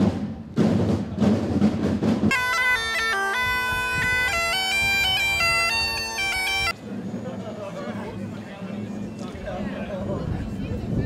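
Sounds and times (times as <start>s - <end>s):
drum beats: 0.0s - 6.7s
bagpipe drone and melody: 2.3s - 6.8s.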